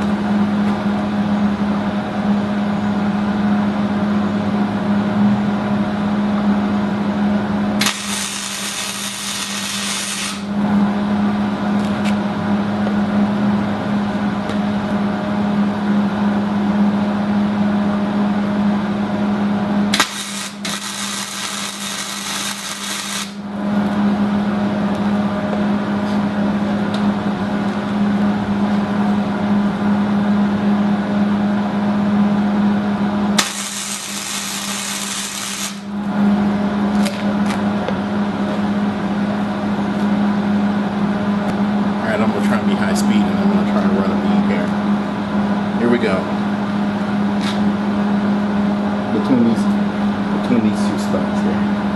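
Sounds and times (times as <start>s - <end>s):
welding arc crackling and buzzing: 7.7s - 10.8s, 19.9s - 23.5s, 33.3s - 36.0s
welder hiss: 7.8s - 10.5s, 20.0s - 23.4s, 33.4s - 35.9s.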